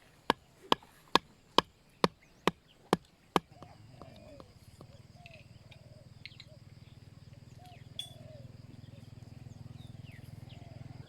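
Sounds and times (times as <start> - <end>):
bird hooting calls: 3.4 - 11.0.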